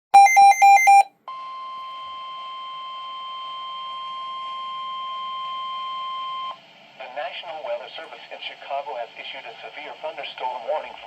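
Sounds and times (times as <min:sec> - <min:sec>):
rapidly switching electronic data tones: 0:00.2 - 0:01.1
steady weather alert tone: 0:00.2 - 0:01.1.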